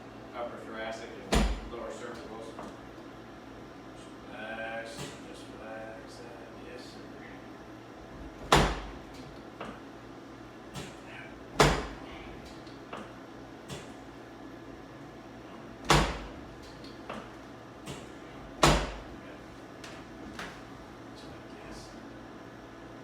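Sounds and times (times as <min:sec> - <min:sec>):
chiropractic table thudding: 0:01.3 - 0:01.7, 0:08.2 - 0:09.8, 0:11.5 - 0:12.0, 0:15.8 - 0:16.4, 0:18.6 - 0:19.1.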